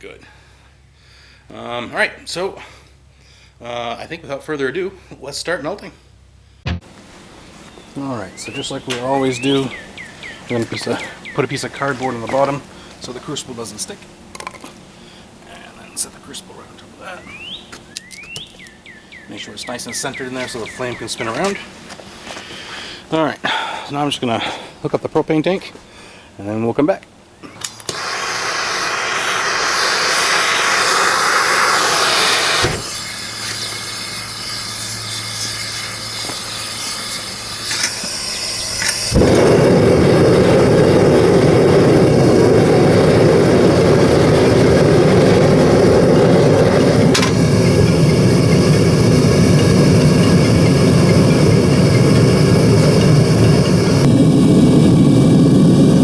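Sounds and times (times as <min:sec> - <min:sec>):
gas hiss: 0:27.6 - 0:56.0
burner jet-like rush: 0:27.9 - 0:56.0
low blower hum: 0:39.1 - 0:56.0.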